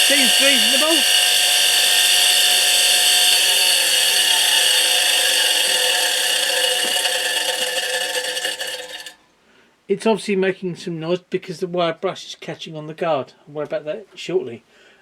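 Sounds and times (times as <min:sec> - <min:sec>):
bench grinder whining: 0:00.0 - 0:09.2
wire brush rubbing on guard: 0:00.0 - 0:09.2.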